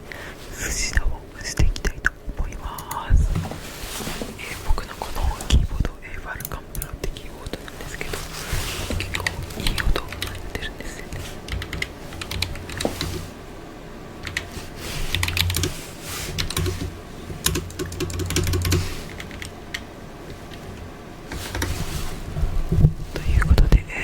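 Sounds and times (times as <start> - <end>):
keyboard typing: 8.9 - 13.2, 14.2 - 14.5, 15.1 - 15.8, 16.4 - 19.8.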